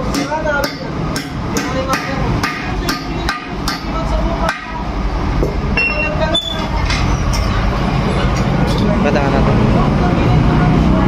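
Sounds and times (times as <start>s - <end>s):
hammer striking metal: 0.0s - 4.8s
low rumble of shop noise: 0.0s - 11.0s.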